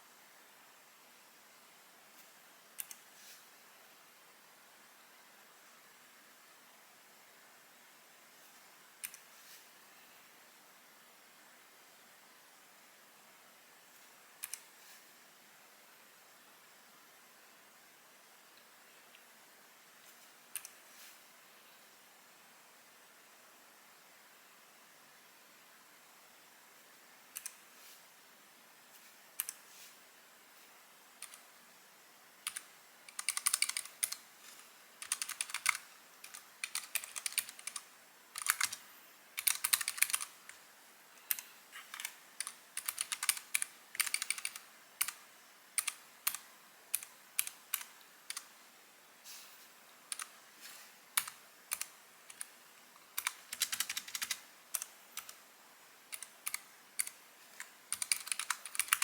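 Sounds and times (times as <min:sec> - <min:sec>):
typing on mechanical keyboard: 0:32.4 - 0:34.2, 0:35.0 - 0:38.8, 0:39.4 - 0:40.6, 0:41.3 - 0:45.2, 0:45.8 - 0:48.5, 0:51.2 - 0:52.5, 0:53.1 - 0:55.4, 0:56.1 - 0:59.0.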